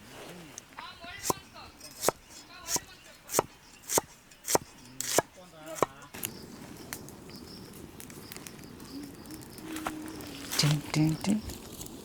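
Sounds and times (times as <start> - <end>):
knife chopping on cutting board: 2.0 - 6.0.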